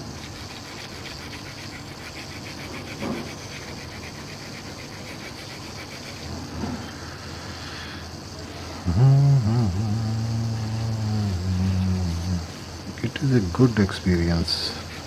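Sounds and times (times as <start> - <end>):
scrubbing a circuit board: 0.0 - 6.6, 10.6 - 15.0
steady low hum: 0.0 - 15.0.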